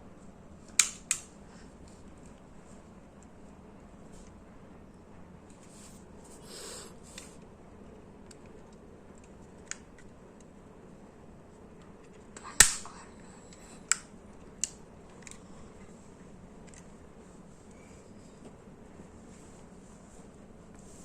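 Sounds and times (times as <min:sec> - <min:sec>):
soft rustle of hair: 0:05.4 - 0:07.4, 0:15.6 - 0:21.0.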